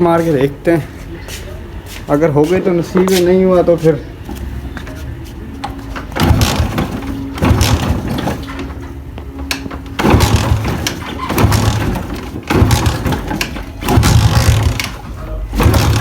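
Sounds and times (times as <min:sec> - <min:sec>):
motorcycle engine churning on kick-start: 0:06.0 - 0:08.8, 0:09.5 - 0:16.0.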